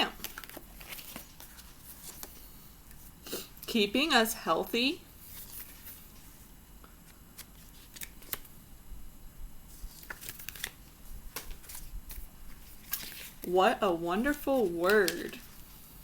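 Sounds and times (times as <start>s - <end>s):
paper rustling: 0.2s - 2.4s, 5.3s - 6.4s, 7.0s - 8.5s, 9.7s - 13.5s, 14.2s - 15.7s.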